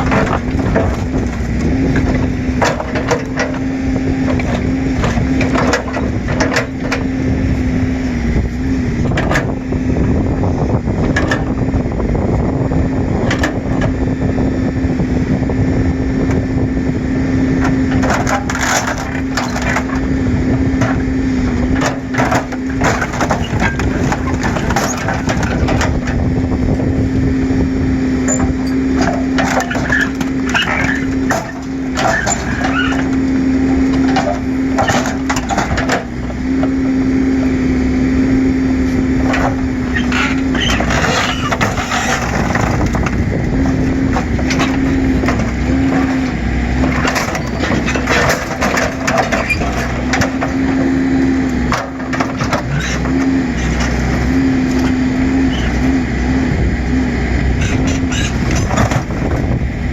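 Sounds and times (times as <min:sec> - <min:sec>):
machine engine humming: 0:00.0 - 0:59.9
metal crunching and snapping: 0:39.3 - 0:55.0.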